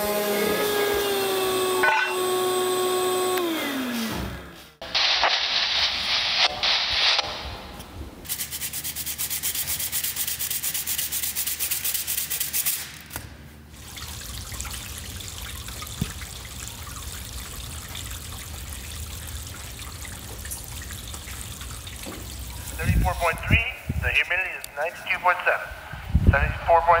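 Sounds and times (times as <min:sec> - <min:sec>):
rhythmic sanding: 0:08.2 - 0:13.0.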